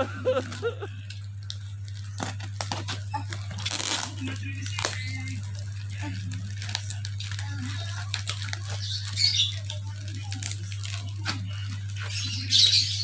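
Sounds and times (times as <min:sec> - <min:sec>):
packaging tearing: 0:00.0 - 0:12.4
low electrical hum: 0:00.0 - 0:12.5
packaging crackling and clicking: 0:00.2 - 0:12.2.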